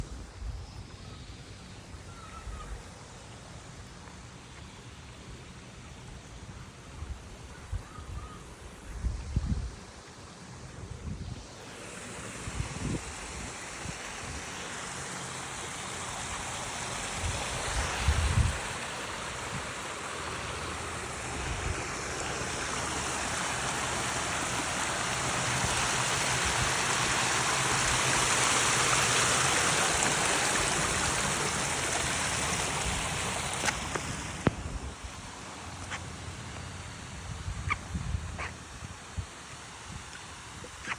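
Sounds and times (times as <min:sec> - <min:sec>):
waterfall rushing: 0:11.6 - 0:37.7.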